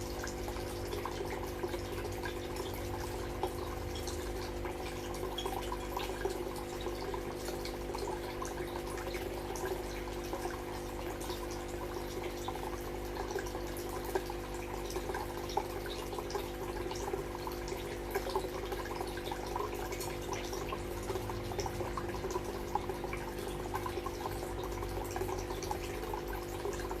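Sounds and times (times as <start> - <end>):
low pump hum: 0.0 - 27.0
water trickling into fish tank: 0.0 - 27.0.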